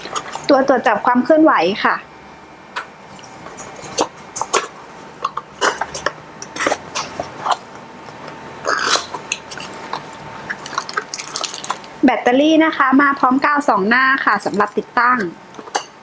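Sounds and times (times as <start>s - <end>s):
packaging crinkly rustles: 10.5s - 12.0s.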